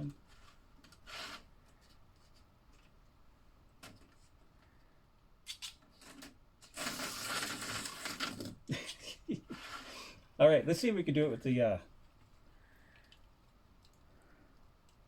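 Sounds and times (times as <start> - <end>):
plastic rattling and scraping: 5.8 - 8.7.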